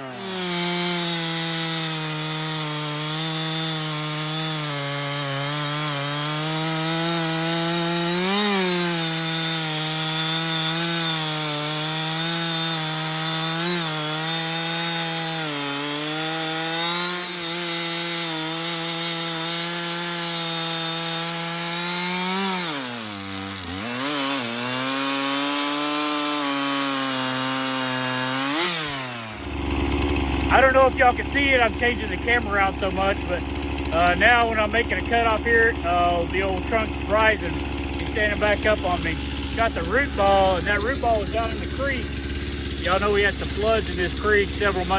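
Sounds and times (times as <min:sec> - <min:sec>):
chainsaw cutting through trunk: 0:00.0 - 0:44.9.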